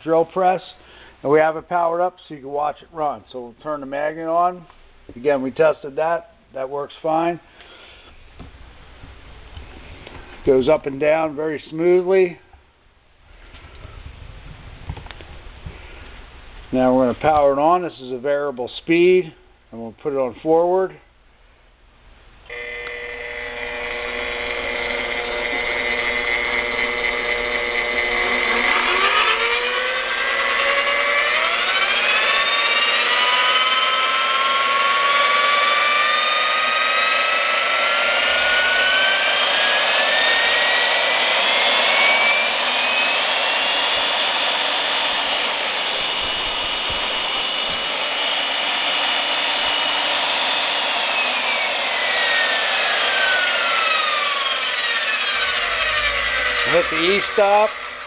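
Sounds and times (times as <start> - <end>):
electric drill motor whine: 22.4 - 58.0.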